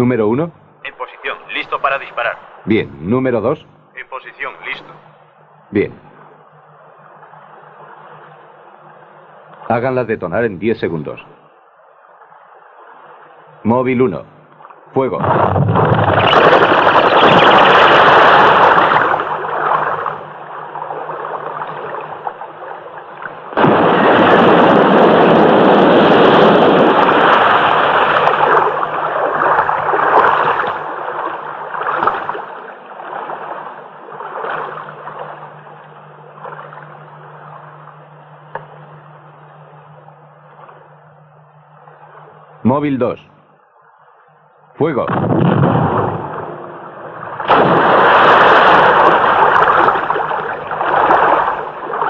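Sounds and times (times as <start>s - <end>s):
low hum: 0.0s - 52.0s
explosion blasts: 23.6s - 28.3s, 45.0s - 46.8s, 47.4s - 49.3s.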